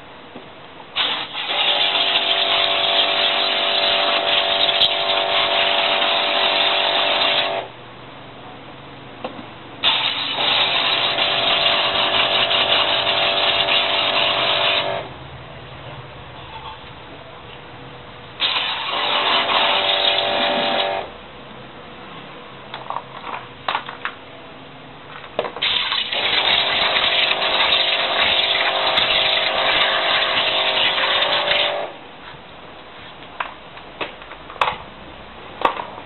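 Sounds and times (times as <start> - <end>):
pressure washer spraying water: 1.0 - 7.7, 9.8 - 15.0, 18.4 - 21.1, 25.6 - 32.0.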